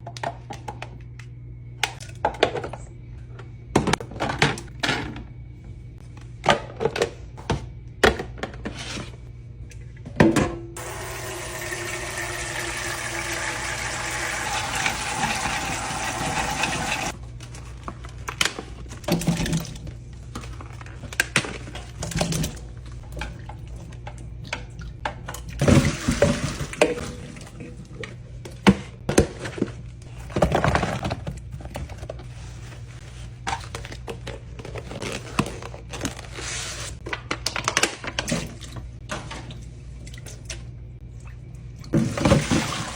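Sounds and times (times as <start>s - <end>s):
water running from a tap: 10.8s - 17.2s.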